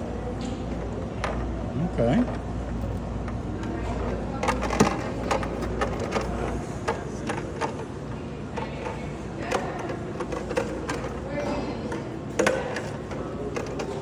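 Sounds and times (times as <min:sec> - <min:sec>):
plastic bucket clicks and knocks: 0:03.6 - 0:07.8.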